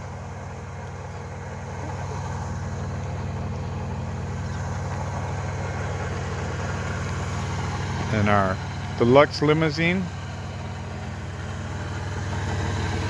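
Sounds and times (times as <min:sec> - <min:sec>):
vehicle engine idling: 0:00.0 - 0:13.0.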